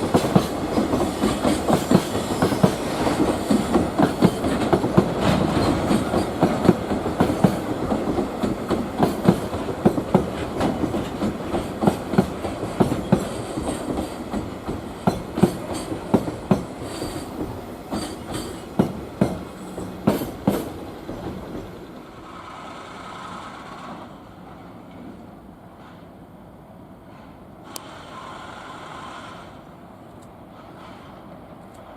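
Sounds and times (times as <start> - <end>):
train wheels clicking over rail joints: 0.0 - 24.2.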